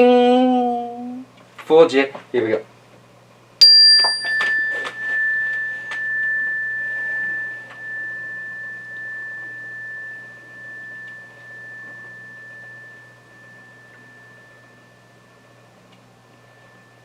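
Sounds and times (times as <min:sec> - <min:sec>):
bell ringing: 0:03.6 - 0:17.0.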